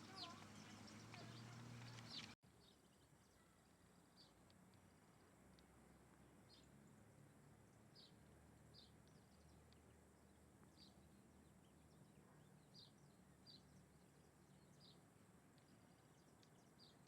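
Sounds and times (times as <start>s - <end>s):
faint bird chirps: 0.0s - 5.3s.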